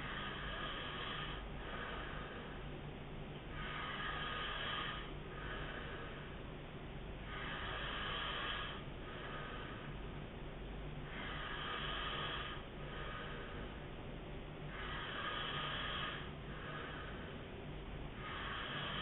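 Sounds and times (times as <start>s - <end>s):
man snoring: 0.0s - 2.4s, 3.5s - 6.2s, 7.2s - 9.9s, 11.0s - 13.7s, 14.7s - 17.3s, 18.1s - 19.0s.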